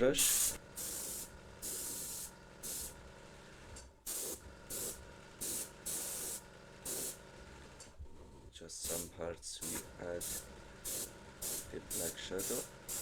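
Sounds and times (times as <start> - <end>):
airbrush spraying hissing bursts: 0.0 - 3.0, 4.1 - 7.2, 8.9 - 13.0.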